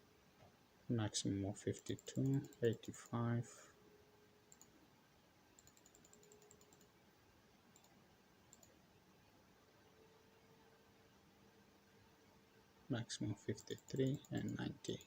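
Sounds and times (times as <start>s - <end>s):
faint steady hum: 0.0s - 15.0s
faint steady tone: 0.0s - 15.0s
computer mouse clicks: 1.7s - 3.0s, 4.5s - 4.7s, 5.6s - 6.9s, 7.7s - 8.8s.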